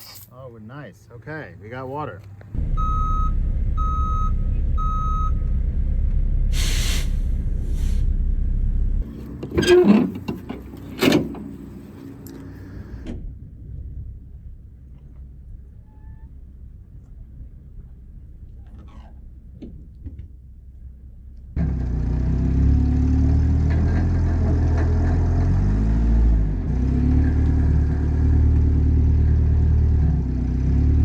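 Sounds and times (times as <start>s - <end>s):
truck engine running: 0.0s - 31.0s
reversing beeper: 2.6s - 7.8s
air hiss: 6.5s - 8.1s.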